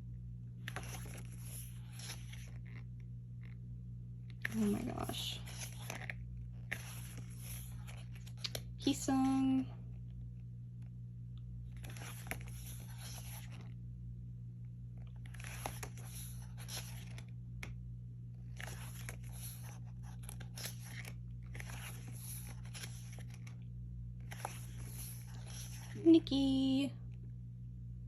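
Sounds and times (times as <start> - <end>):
low electrical hum: 0.0 - 28.0
paper pages rustling: 0.6 - 3.6, 4.3 - 8.7, 11.7 - 13.8, 15.0 - 26.1.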